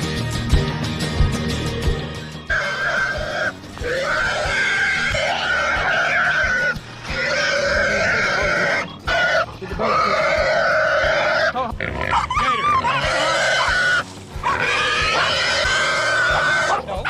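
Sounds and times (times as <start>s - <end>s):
hog squealing: 2.5s - 17.0s.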